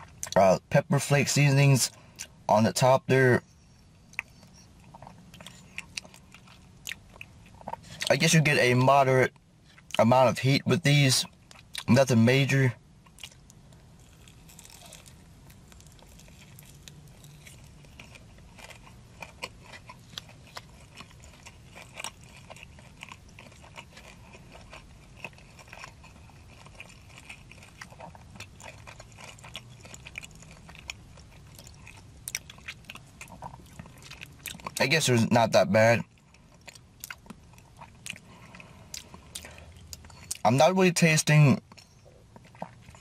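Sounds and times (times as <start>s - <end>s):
low steady hum: 0.0s - 43.0s
person chewing crunchy food: 3.4s - 8.2s, 9.3s - 10.1s, 11.2s - 11.9s, 13.0s - 34.8s, 35.8s - 40.4s, 41.6s - 43.0s.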